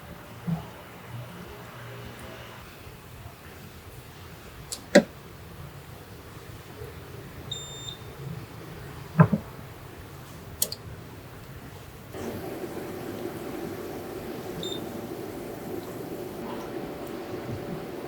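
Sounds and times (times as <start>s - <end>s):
steady hum: 12.2s - 18.0s.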